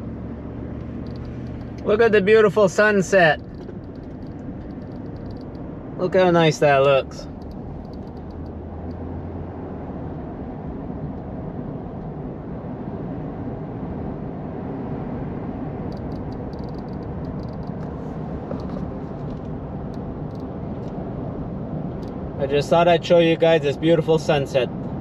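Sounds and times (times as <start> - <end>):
vehicle road and engine rumble: 0.0 - 25.0
faint high clicks: 0.8 - 1.9, 3.4 - 5.7, 7.3 - 9.0, 15.9 - 21.0.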